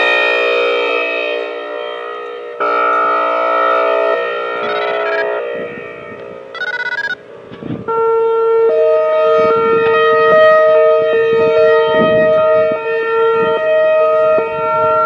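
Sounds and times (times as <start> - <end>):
siren two-note chord: 0.0 - 12.7
outdoor warning siren steady tone: 0.0 - 15.0
rapid pulsing tone: 4.6 - 5.4, 6.6 - 7.2.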